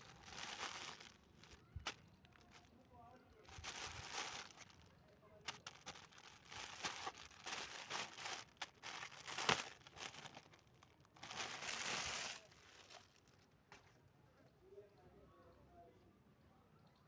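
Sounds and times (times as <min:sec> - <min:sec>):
packaging tearing: 0:00.0 - 0:02.6, 0:03.5 - 0:04.8, 0:05.5 - 0:13.2
packaging crinkling: 0:00.0 - 0:02.7, 0:03.4 - 0:13.4.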